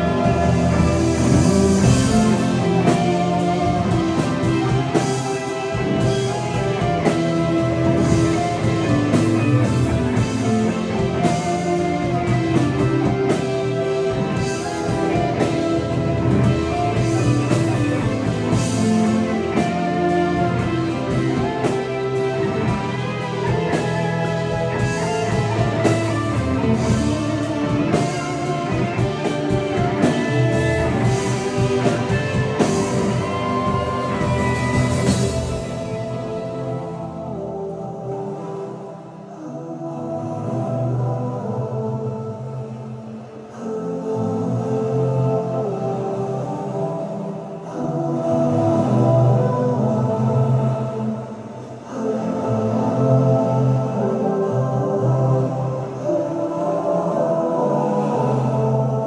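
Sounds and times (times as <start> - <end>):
live rock band playing: 0.0 - 36.8.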